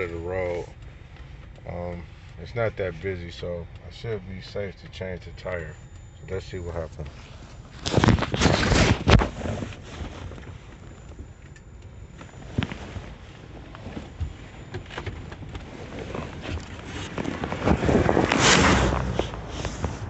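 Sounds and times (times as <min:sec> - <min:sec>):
low outdoor rumble: 0:00.0 - 0:20.0
vehicle rushing past: 0:17.6 - 0:20.0.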